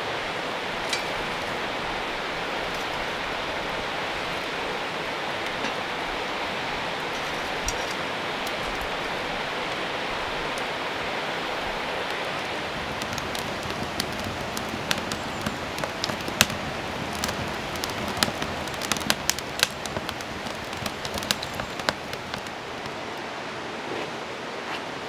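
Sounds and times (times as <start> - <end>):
steady rain hiss: 0.0 - 23.6
water drip clicks: 12.1 - 23.0.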